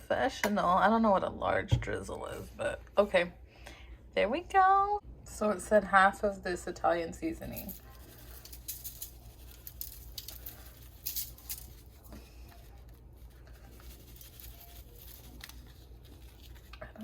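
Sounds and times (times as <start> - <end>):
low steady hum: 0.0 - 17.0
dried herbs pattering onto pan: 7.4 - 17.0.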